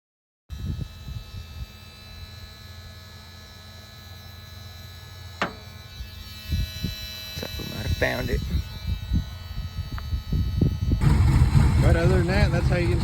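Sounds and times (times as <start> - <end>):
car engine idling: 5.4 - 5.9, 11.0 - 13.0.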